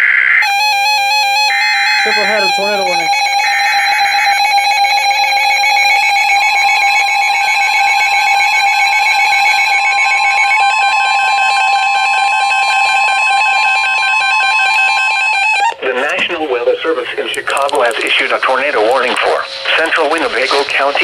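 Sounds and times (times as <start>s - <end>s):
electronic alarm tones: 0.4s - 16.2s
weather radio alarm tone: 0.4s - 21.0s.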